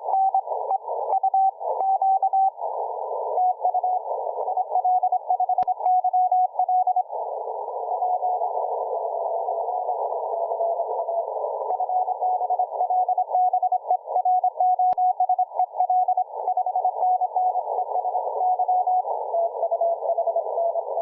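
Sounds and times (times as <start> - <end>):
radio hiss: 7.0 - 13.4.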